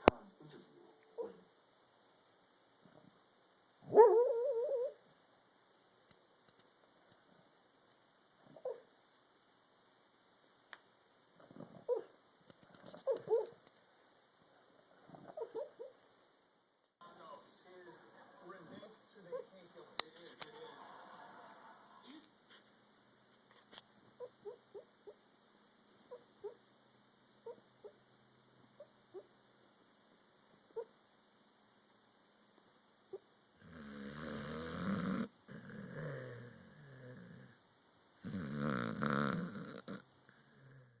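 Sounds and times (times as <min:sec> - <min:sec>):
dog whimpering in its sleep: 0:11.4 - 0:12.1, 0:12.8 - 0:13.6, 0:15.0 - 0:16.0, 0:24.2 - 0:25.2, 0:33.1 - 0:37.6, 0:38.2 - 0:41.0.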